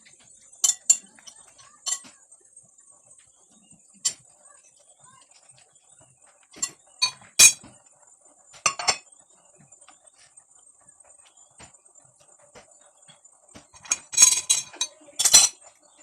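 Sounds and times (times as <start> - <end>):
cutlery clinking against dishes: 0.6 - 2.2, 6.6 - 7.7, 8.6 - 9.1, 13.7 - 15.6.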